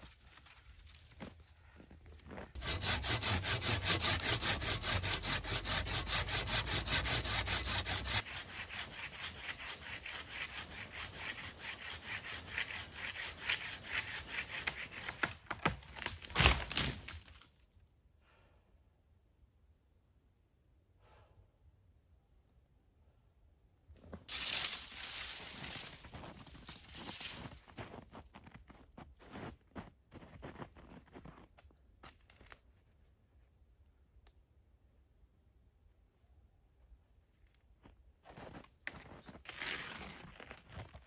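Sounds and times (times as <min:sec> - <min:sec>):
hand saw cutting wood: 0:02.6 - 0:15.7, 0:24.3 - 0:26.5.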